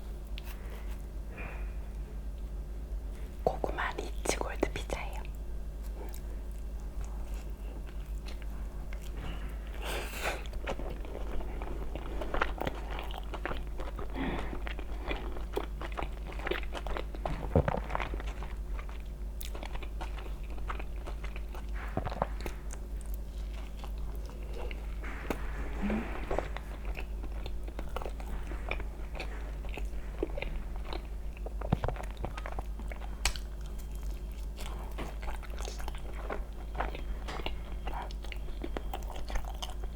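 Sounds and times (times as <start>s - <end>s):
close chewing: 4.9s - 39.9s.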